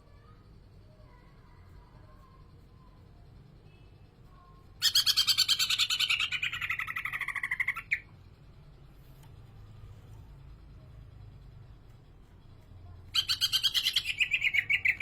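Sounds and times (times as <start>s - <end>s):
bird singing fast repeated notes: 4.6s - 8.7s, 10.6s - 15.0s.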